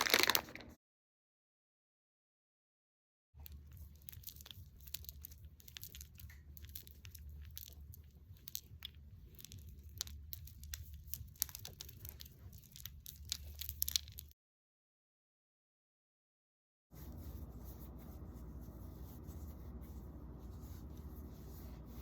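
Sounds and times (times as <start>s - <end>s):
crunching and crackling clicks: 0.0s - 0.7s, 3.4s - 14.4s
low steady hum: 16.9s - 22.0s.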